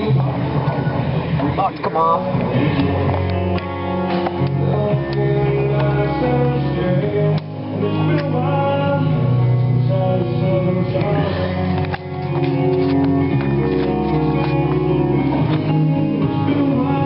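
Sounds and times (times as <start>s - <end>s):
song with guitar bass and singing: 0.0s - 17.0s.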